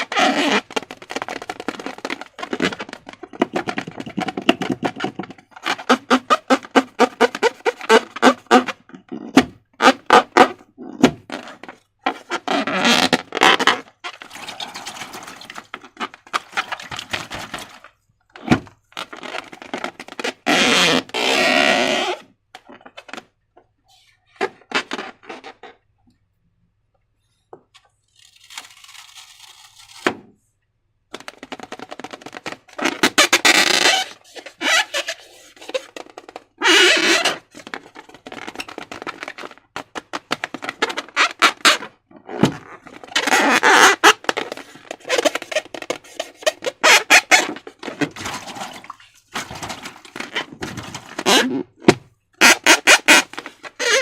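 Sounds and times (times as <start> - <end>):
slime squelching: 46.4 - 51.8.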